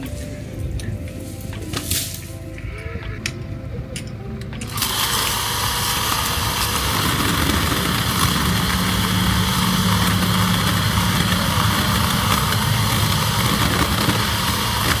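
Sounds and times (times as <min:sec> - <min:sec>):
saw motor running: 0:04.7 - 0:15.0.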